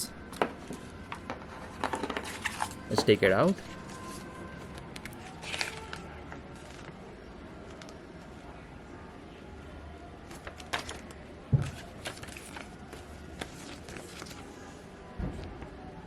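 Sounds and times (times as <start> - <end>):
packaging clicks and rustles: 0.7 - 7.0, 10.3 - 14.5.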